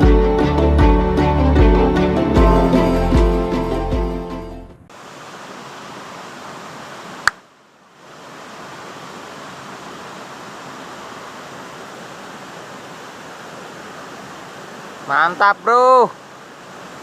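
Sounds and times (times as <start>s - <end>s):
stream water rushing: 4.9s - 17.0s
sharp click: 7.2s - 7.4s.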